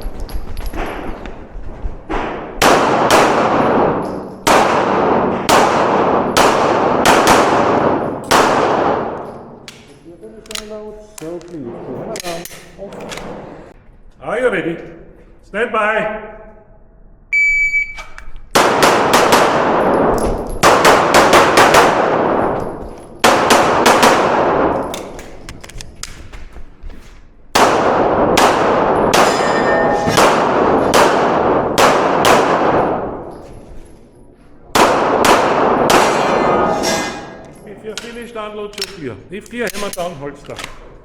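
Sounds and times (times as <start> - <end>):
handgun shots echoing: 2.3 - 10.8, 18.6 - 26.2, 27.6 - 33.3, 34.7 - 38.1
shot timer beep: 17.3 - 18.2
steel targets clanging: 29.0 - 30.2, 36.1 - 38.2.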